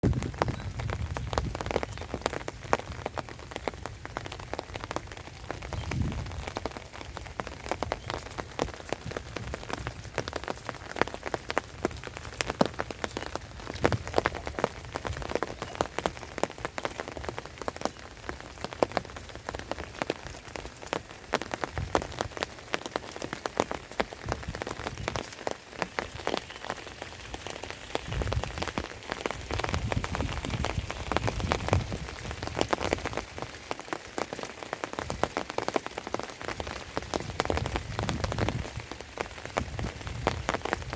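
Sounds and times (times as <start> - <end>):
sharp raindrop hits: 0.0 - 40.9
steady rain falling: 0.0 - 40.9.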